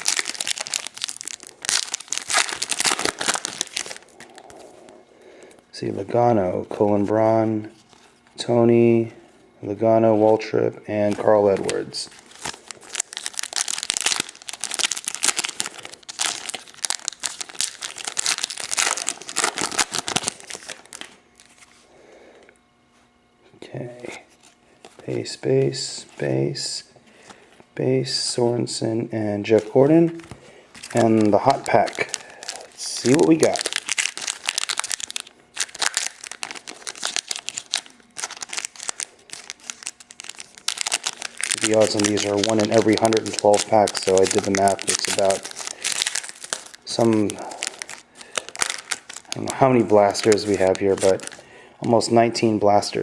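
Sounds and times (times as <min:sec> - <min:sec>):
foil wrapper crinkling: 0:00.0 - 0:04.8, 0:11.0 - 0:21.8, 0:29.4 - 0:52.1.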